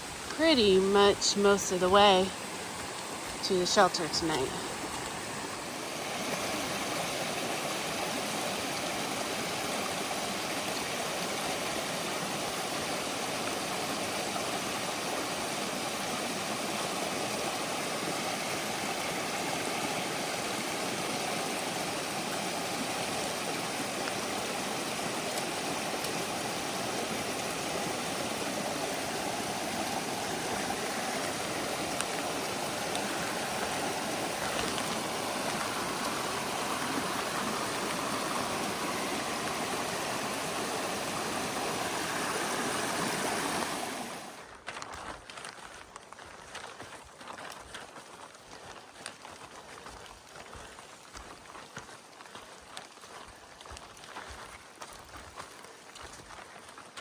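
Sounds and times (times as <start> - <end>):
rushing water: 0.0 - 57.0.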